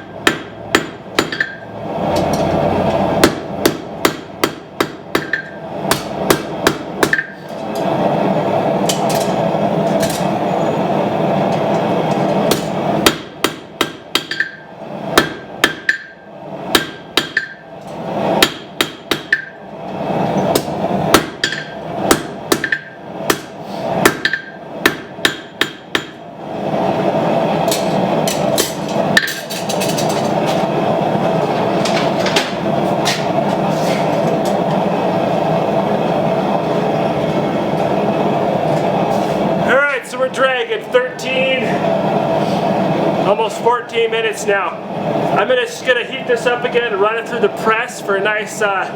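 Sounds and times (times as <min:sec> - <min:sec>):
hammer striking steel on anvil: 0:00.0 - 0:02.5, 0:03.2 - 0:07.4, 0:12.5 - 0:17.6, 0:18.4 - 0:19.6, 0:20.5 - 0:26.2.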